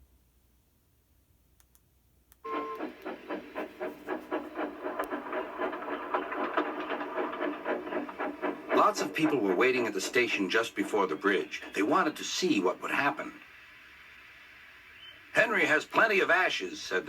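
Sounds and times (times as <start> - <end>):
train whistle toot: 2.4 - 4.1
rail clatter: 2.5 - 14.0
steam locomotive chuffing: 2.5 - 17.0.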